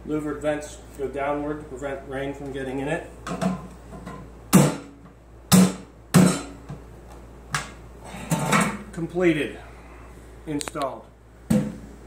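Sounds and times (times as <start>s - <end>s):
knocks on sheet-metal cabinet: 5.5s - 6.5s.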